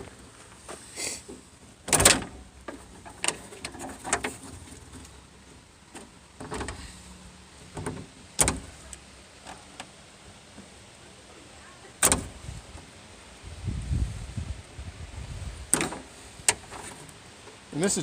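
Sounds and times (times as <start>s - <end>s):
door latch clunk: 1.9s - 2.4s, 7.8s - 8.8s, 12.0s - 12.4s, 15.7s - 16.6s
latch clicks and knocks: 1.9s - 2.4s, 6.4s - 6.8s, 7.7s - 8.8s, 12.0s - 12.4s, 15.7s - 16.8s.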